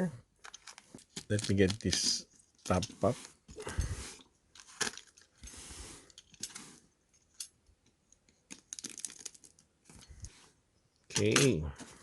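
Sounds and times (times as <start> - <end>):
packaging rustling and clicking: 0.4 - 3.4, 4.5 - 5.5, 8.3 - 10.3.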